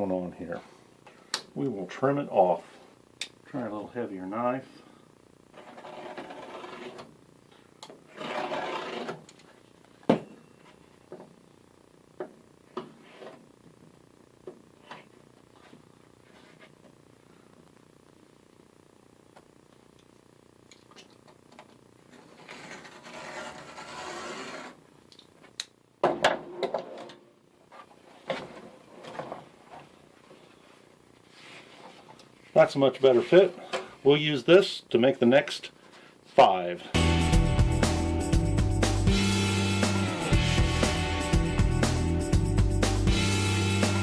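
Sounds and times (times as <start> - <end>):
knife cutting rubber mat: 22.4 - 24.8.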